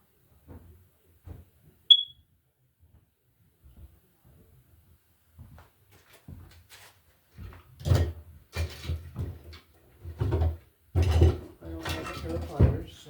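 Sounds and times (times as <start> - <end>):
tools knocking and clunking: 7.8 - 13.0.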